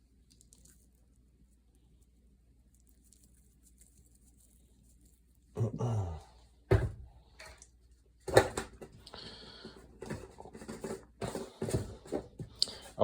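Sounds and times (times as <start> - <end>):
kitchenware knocking and clattering: 6.7 - 7.6, 8.3 - 9.0, 10.0 - 12.5.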